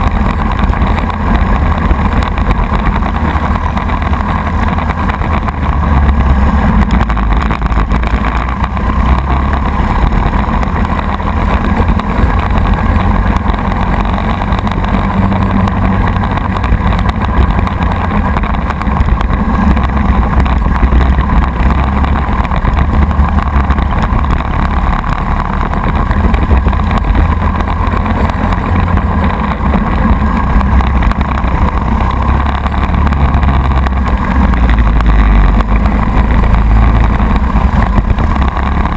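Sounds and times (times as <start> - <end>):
kart engine running hard: 0.0 - 38.9.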